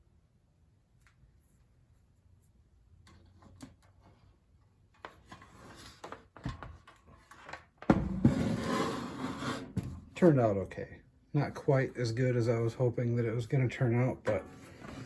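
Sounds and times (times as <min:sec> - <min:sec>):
handling rubbing and knocks: 0:05.0 - 0:10.4, 0:14.1 - 0:15.0
loud scraping rustle: 0:08.2 - 0:09.9.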